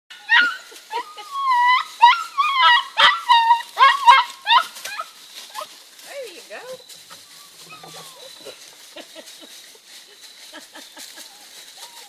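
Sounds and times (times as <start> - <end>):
puppy whining and yelping: 0.1 - 5.8, 6.9 - 8.8, 10.9 - 12.0.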